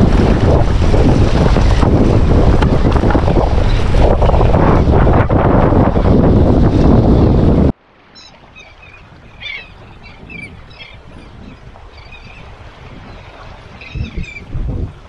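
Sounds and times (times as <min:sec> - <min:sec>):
dull low thumps: 0:00.0 - 0:07.7
water: 0:00.0 - 0:15.0
wind: 0:00.0 - 0:15.0.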